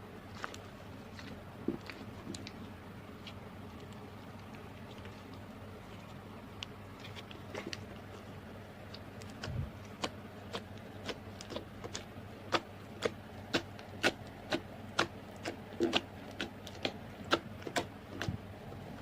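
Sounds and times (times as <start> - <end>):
slime clicking and popping: 8.9 - 18.3.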